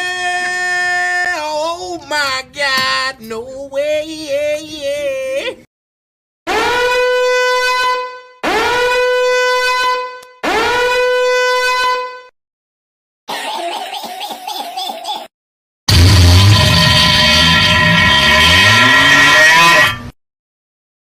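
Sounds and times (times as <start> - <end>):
horn blasts: 6.5 - 12.3, 15.9 - 20.1
rough sound: 15.9 - 20.2.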